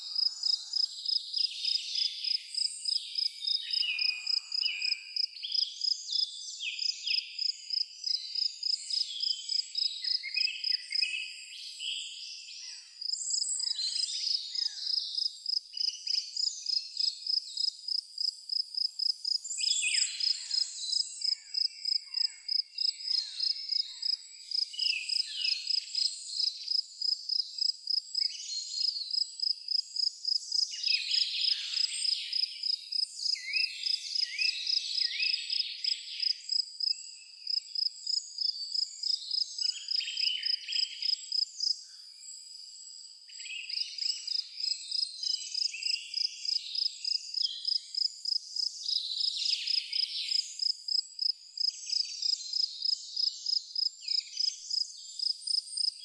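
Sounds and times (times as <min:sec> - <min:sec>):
cricket chirping: 0:00.0 - 0:11.5, 0:13.0 - 0:56.0
birds singing and calling: 0:00.0 - 0:17.1, 0:19.4 - 0:26.8, 0:29.8 - 0:42.5, 0:43.3 - 0:50.8.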